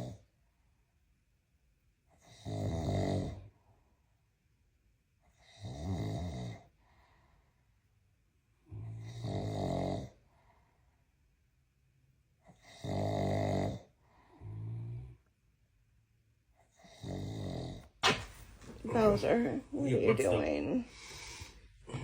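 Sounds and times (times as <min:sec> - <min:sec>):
dog snoring: 0:00.0 - 0:00.3, 0:02.2 - 0:03.6, 0:05.3 - 0:06.7, 0:08.6 - 0:10.4, 0:12.4 - 0:15.3, 0:16.6 - 0:17.9.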